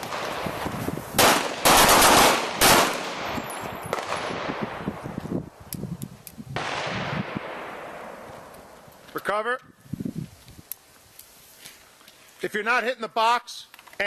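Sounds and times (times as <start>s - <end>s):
handgun shots echoing: 1.2s - 4.4s.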